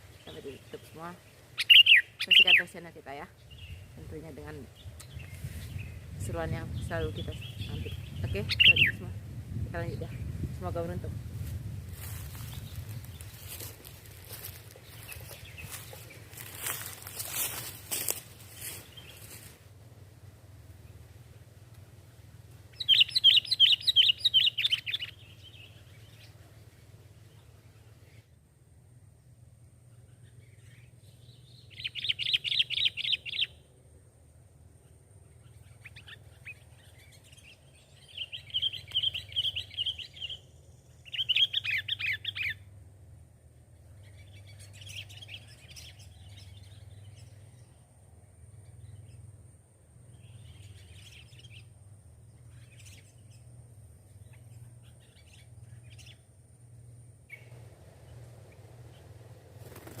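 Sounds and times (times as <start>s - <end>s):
faint bird chirps: 0.0s - 4.0s, 12.0s - 19.5s, 22.7s - 26.4s, 34.8s - 42.7s
bird chattering calls: 0.1s - 2.8s, 6.8s - 9.0s, 22.7s - 25.8s.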